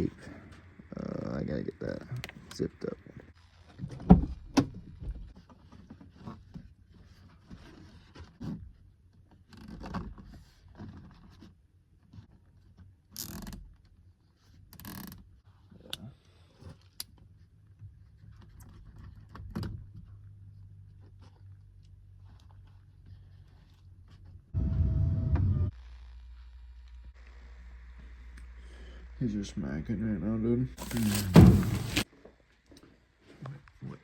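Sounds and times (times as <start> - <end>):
rasping noises: 30.8 - 32.0.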